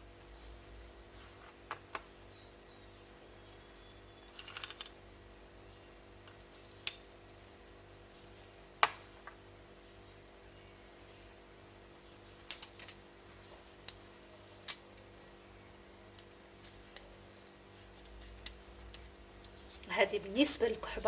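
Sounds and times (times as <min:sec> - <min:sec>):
faint steady hum: 0:00.0 - 0:21.0.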